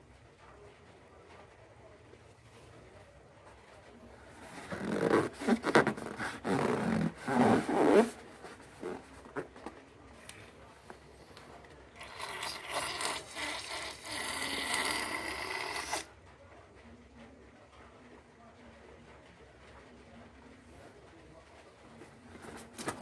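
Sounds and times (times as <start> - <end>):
balloon rubbing squeaks: 4.4 - 9.4, 12.9 - 16.1.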